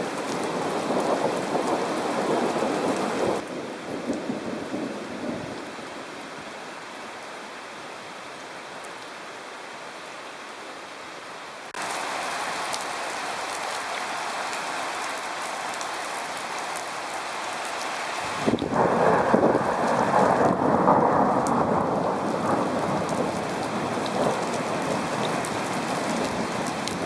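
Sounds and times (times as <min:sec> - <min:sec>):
heavy rain hissing: 0:00.0 - 0:07.2, 0:11.7 - 0:27.0
thunder rumble: 0:18.3 - 0:27.0.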